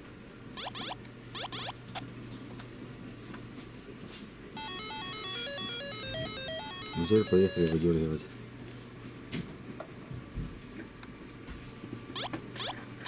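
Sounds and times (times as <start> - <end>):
low steady hum: 0.0 - 8.8
sweeping chirps: 0.6 - 2.0
synthesized beeping melody: 0.6 - 2.0, 4.6 - 7.8, 12.2 - 12.8.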